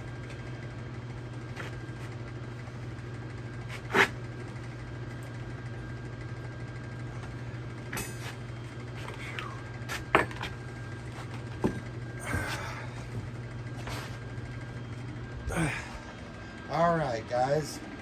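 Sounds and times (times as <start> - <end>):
steady low hum: 0.0 - 18.0
metal parts clanking: 7.9 - 8.4.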